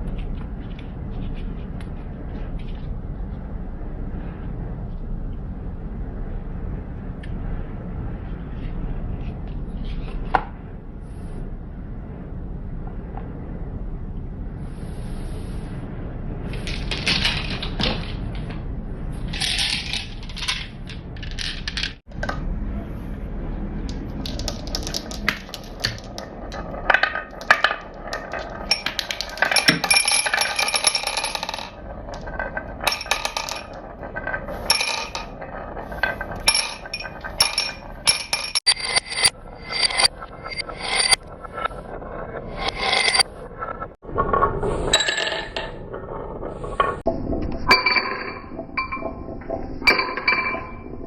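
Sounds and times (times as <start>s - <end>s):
marbles clicking on track: 23.9s - 35.4s
marbles rolling on track: 23.9s - 41.2s.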